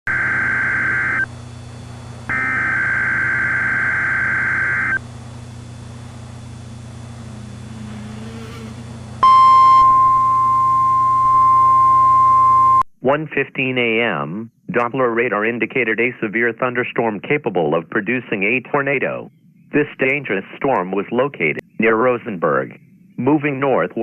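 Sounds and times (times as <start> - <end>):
steady warning alarm tone: 0.1 - 1.3, 2.2 - 12.8
low hum: 0.1 - 12.9
buzzing data tones: 2.3 - 11.5.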